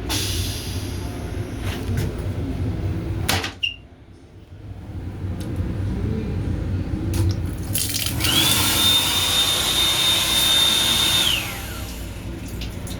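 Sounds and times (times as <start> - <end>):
steady low rumble: 0.0 - 3.3, 3.9 - 8.4
motor whine: 8.2 - 12.1.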